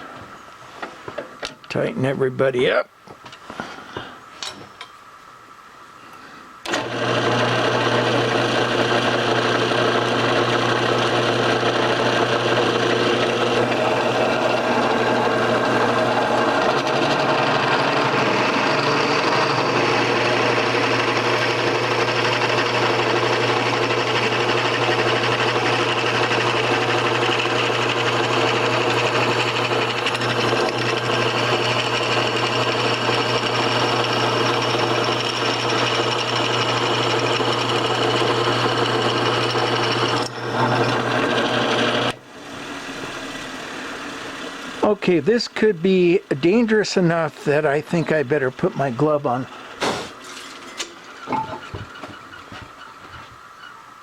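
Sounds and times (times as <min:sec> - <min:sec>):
drill press motor running: 0:06.6 - 0:44.8.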